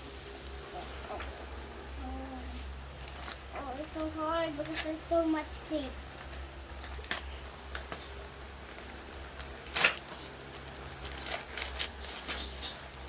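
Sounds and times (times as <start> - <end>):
wrapping paper rustling and tearing: 2.6 - 5.1, 5.8 - 13.0.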